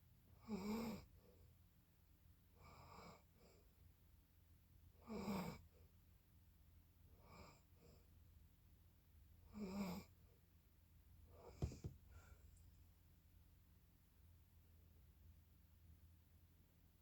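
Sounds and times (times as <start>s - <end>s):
soft breath: 11.4s - 12.7s
short knock: 11.6s - 12.0s.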